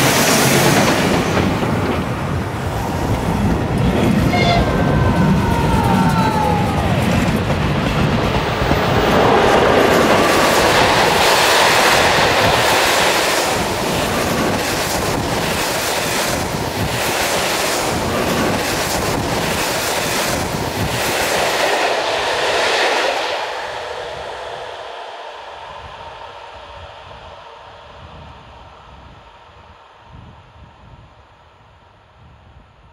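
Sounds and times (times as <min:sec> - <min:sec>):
train wheels clattering: 0:00.0 - 0:23.6.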